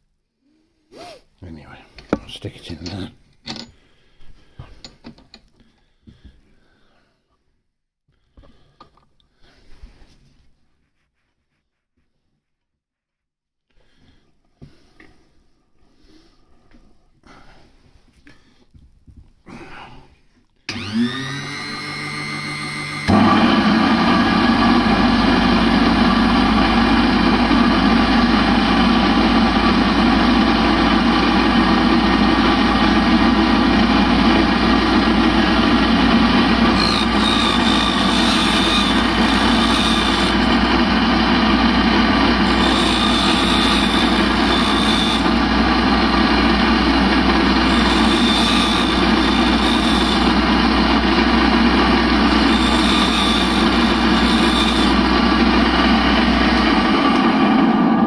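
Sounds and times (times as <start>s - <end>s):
grinding machine motor running: 20.7s - 58.0s
high grinding whine: 20.7s - 58.0s.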